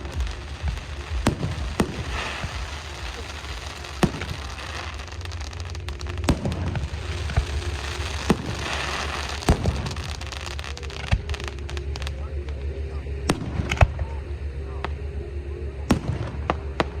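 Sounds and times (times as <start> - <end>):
fireworks sharp bangs: 0.0 - 12.2, 15.9 - 17.0
fireworks crackling: 0.0 - 17.0
steady low hum: 0.0 - 17.0.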